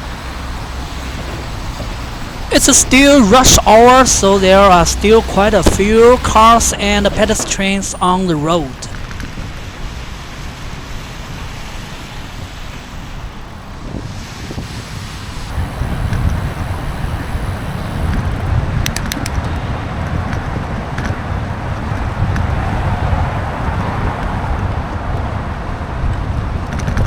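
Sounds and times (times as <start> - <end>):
road traffic: 0.0 - 27.0
tyres on wet road: 0.0 - 27.0
wind buffeting microphone: 8.9 - 27.0
sharp ticks: 15.8 - 19.6.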